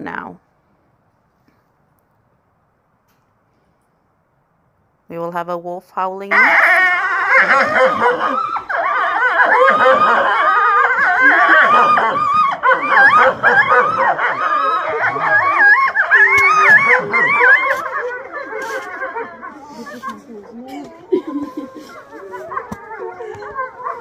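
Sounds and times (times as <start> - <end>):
wolves howling in chorus: 6.3 - 24.0.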